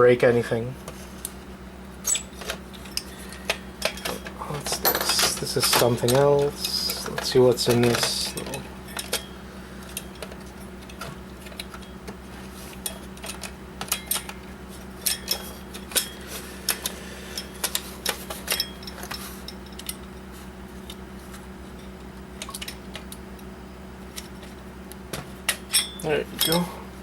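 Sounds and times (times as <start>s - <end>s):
steady low hum: 0.0s - 27.0s
hand tools clicking and clinking: 2.0s - 9.3s, 12.8s - 14.4s, 15.0s - 20.0s, 25.5s - 26.8s.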